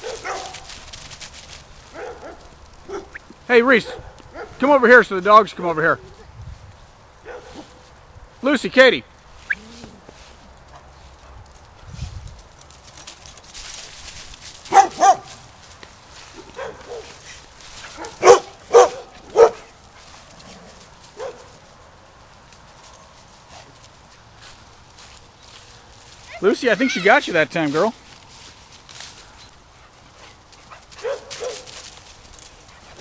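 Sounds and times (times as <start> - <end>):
dog barking: 0.0 - 0.7, 1.9 - 3.2, 3.8 - 4.6, 7.2 - 7.8, 14.7 - 15.3, 16.4 - 17.2, 18.0 - 19.7, 21.2 - 21.5, 31.0 - 31.7
dog yipping: 0.0 - 0.7, 2.0 - 3.3, 14.7 - 15.3, 18.0 - 19.6, 31.0 - 31.7.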